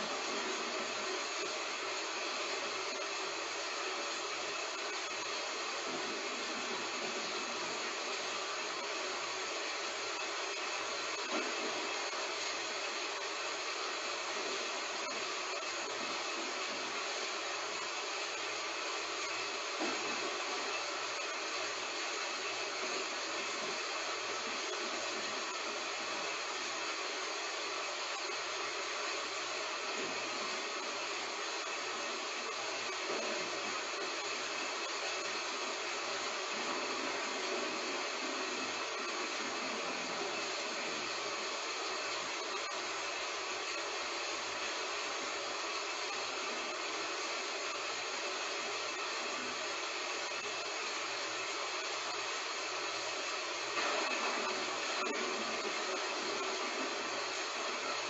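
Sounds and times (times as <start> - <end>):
heavy rain hissing: 0.0 - 58.0.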